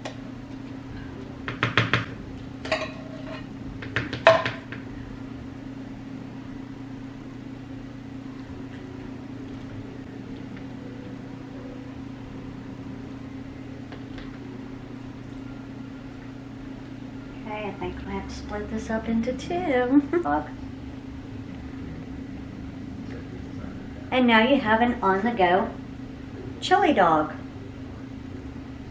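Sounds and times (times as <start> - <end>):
low electrical appliance hum: 0.0 - 28.9
dishes and utensils clinking: 2.6 - 3.5.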